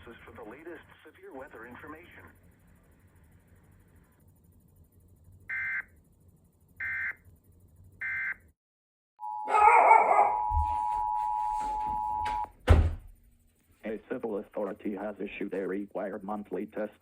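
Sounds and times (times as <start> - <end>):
two-tone attention signal: 9.2 - 12.5.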